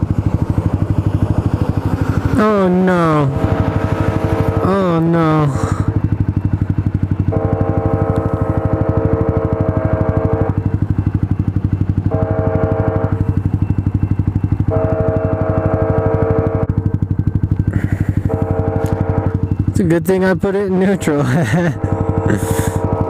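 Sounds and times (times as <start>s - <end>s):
motorcycle engine idling: 0.0s - 23.0s
train horn blasts: 3.0s - 6.0s, 7.2s - 10.8s, 12.1s - 13.4s, 14.6s - 16.9s, 18.2s - 19.6s, 20.9s - 23.0s.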